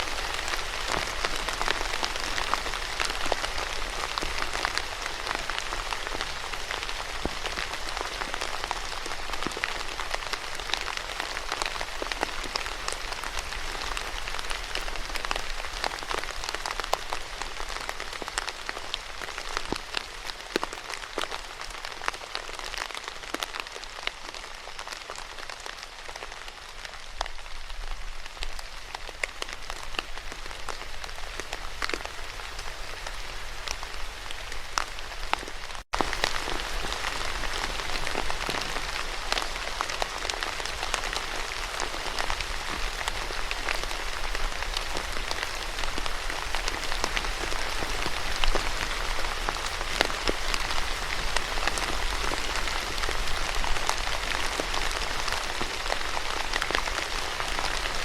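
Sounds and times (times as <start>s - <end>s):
rain on a hard surface: 0.0s - 58.0s.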